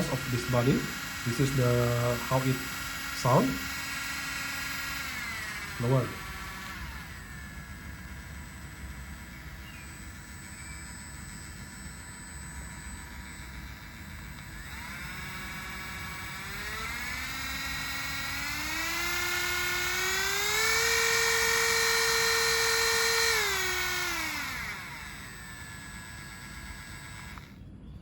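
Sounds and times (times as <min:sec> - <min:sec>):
cordless drill motor whining: 0:00.0 - 0:27.7.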